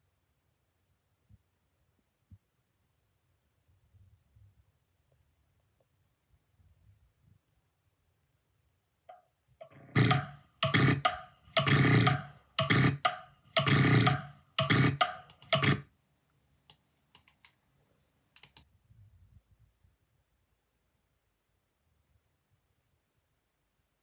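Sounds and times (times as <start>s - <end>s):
person making rough vocal bursts: 9.8s - 15.8s
faint clicks: 16.6s - 18.7s.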